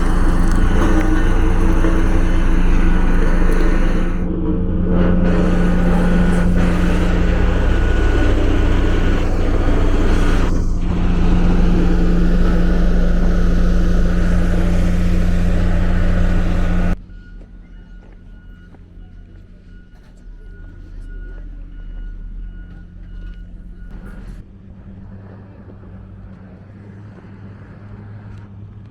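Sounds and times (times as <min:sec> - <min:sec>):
large engine running: 0:00.0 - 0:17.0.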